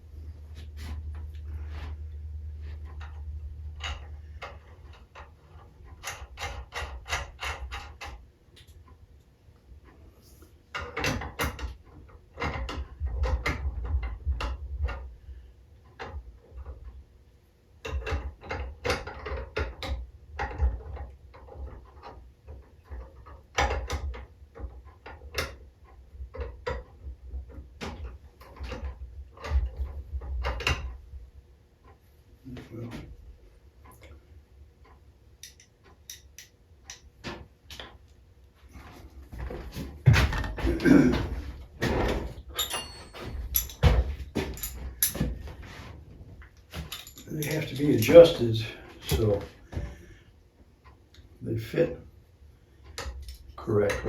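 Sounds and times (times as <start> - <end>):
metal parts clicking and tapping: 2.8 - 9.0, 17.8 - 31.0, 34.8 - 38.2, 41.4 - 45.6, 46.7 - 49.8.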